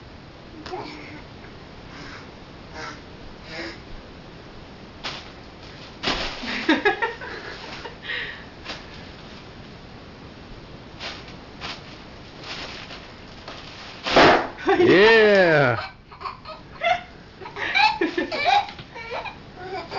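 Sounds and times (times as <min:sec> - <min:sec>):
bubble wrap crinkling: 0:05.0 - 0:06.8, 0:11.0 - 0:14.6
bubble wrap popping: 0:05.9 - 0:06.5, 0:11.0 - 0:14.6.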